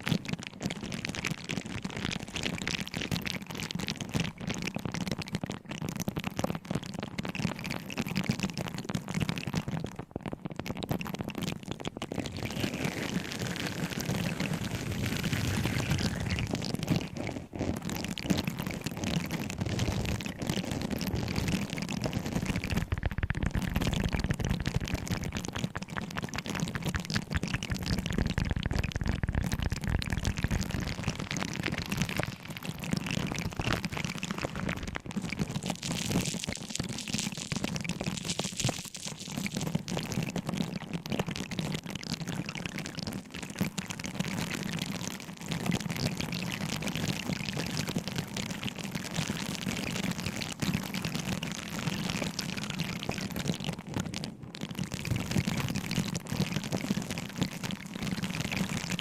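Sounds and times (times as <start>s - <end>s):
objects crackling and clicking: 8.9s - 41.5s.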